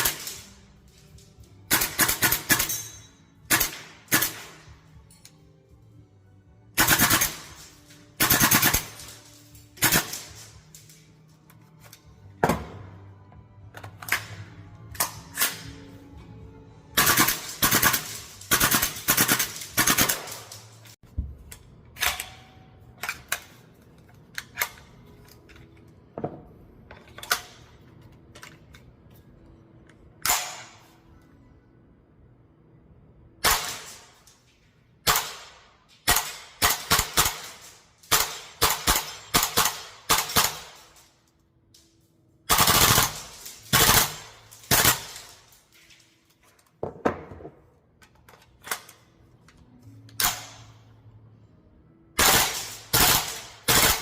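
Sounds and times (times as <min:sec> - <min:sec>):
airsoft rifle shots: 0:52.2 - 0:54.0.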